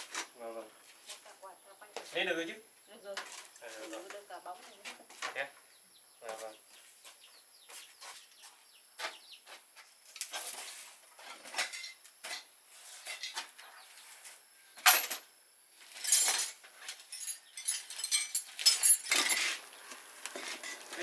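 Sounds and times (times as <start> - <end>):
hard objects clinking: 15.9 - 21.0.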